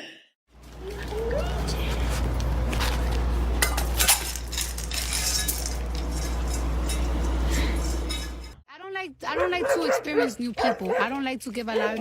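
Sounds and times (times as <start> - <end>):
steady low hum: 0.6 - 8.6
hard objects clinking: 3.5 - 8.6.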